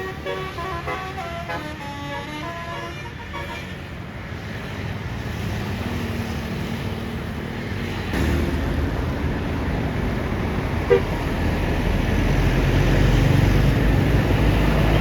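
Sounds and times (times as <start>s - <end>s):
multi-tone bus horn melody: 0.0s - 4.0s, 10.9s - 11.2s
bus engine rumble: 0.0s - 15.0s.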